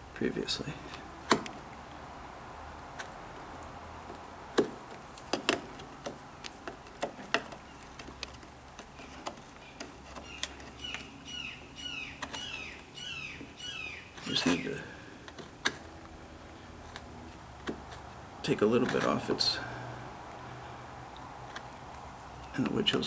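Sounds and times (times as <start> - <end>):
chisel clicking and scraping wood: 0.9 - 23.0
bird chirping: 7.5 - 8.4, 9.0 - 15.1.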